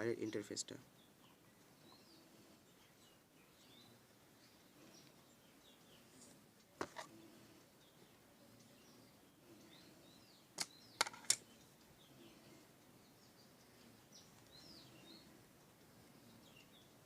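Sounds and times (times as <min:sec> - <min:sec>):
faint birds chirping: 0:00.0 - 0:17.0
plastic parts clicking: 0:10.6 - 0:11.4.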